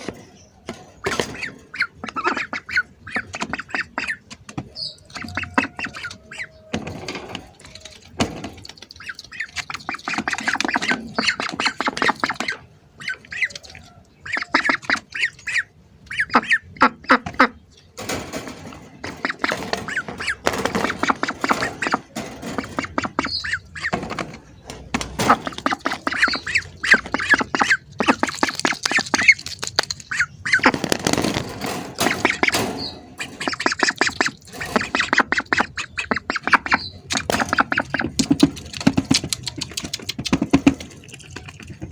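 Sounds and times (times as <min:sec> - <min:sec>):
ducks quacking: 0:00.0 - 0:41.9.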